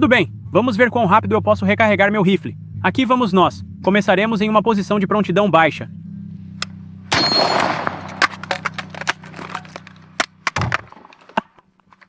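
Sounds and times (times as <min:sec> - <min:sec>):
rifle handling noise: 0:07.4 - 0:12.0
rifle metallic clicks and knocks: 0:07.4 - 0:12.0.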